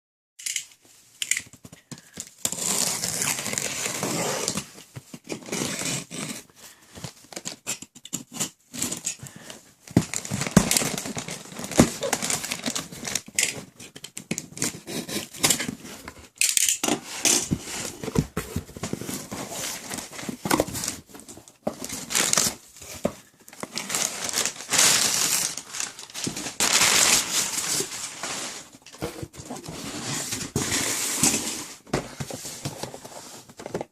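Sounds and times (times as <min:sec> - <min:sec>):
plastic and paper crinkling: 0:09.1 - 0:33.9.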